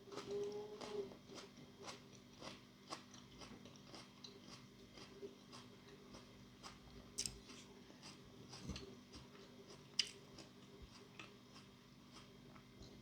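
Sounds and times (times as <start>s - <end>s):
faint chewing of food: 0.0s - 13.0s.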